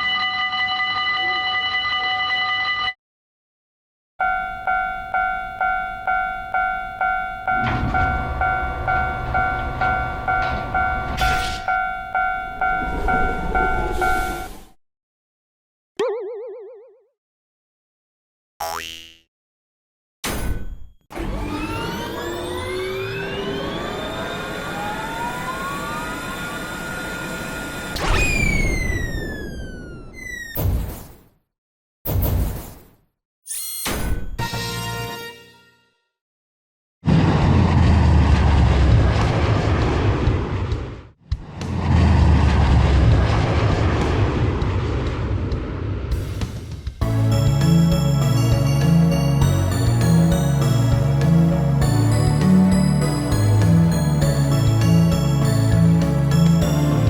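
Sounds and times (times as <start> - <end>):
railway crossing bell ringing: 4.2 - 14.6, 47.2 - 57.0
passing train rumble: 7.6 - 11.1, 12.4 - 14.6
synthesized rising tones: 21.4 - 30.5
sudden loud blast: 41.6 - 46.8.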